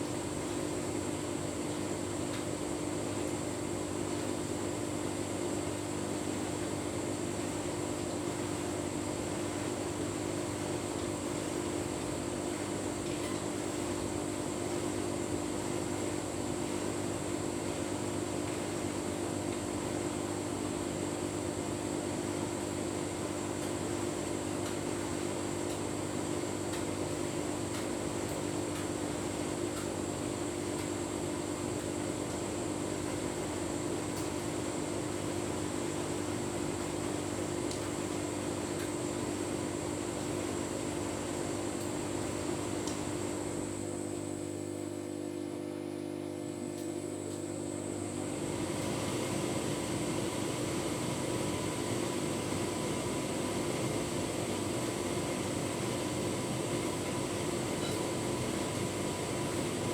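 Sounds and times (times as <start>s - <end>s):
tumble dryer running: 39.9s - 59.9s.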